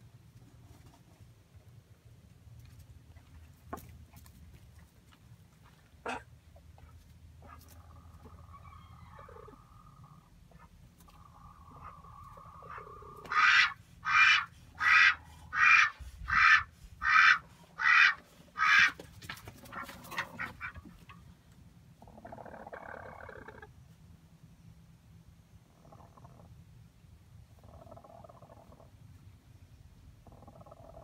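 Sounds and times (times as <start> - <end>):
duck quacking: 6.0 - 6.3, 12.6 - 19.0.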